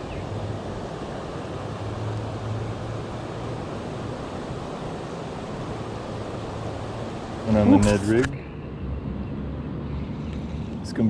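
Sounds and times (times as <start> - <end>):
waterfall rushing: 0.0 - 8.1.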